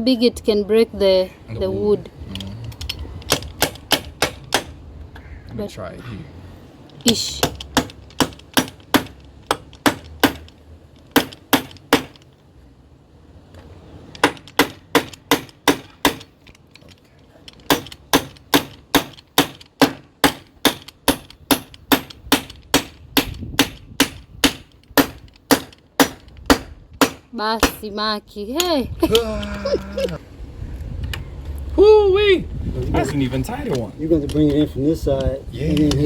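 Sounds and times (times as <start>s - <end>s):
hammer driving nail into wood: 2.8s - 4.8s, 7.4s - 12.3s, 14.2s - 16.4s, 17.6s - 27.8s.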